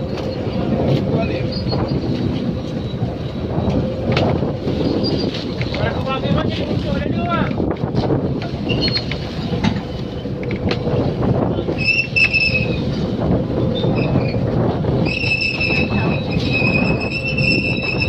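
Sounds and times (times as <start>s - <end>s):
boat engine running: 0.0s - 18.0s
high-pitched gear squeal: 15.0s - 18.0s.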